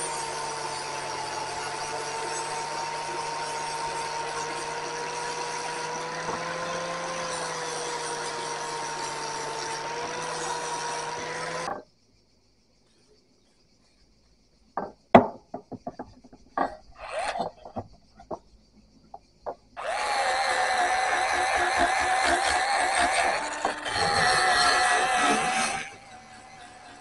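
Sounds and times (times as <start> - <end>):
power tool whining: 0.0 - 11.8, 16.6 - 18.4, 19.8 - 27.0.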